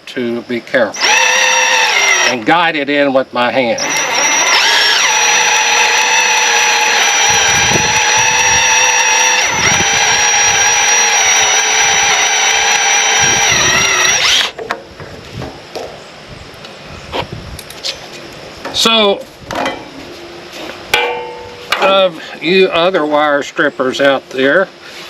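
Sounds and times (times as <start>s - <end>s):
wire stripper machine whine: 0.9s - 14.6s.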